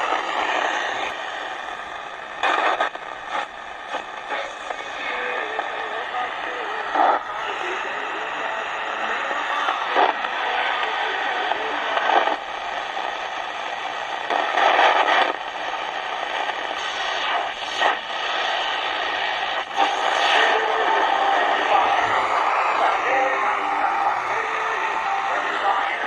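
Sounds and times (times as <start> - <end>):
bursts of radio noise: 0.0 - 26.0
radio static and hiss: 0.0 - 26.0.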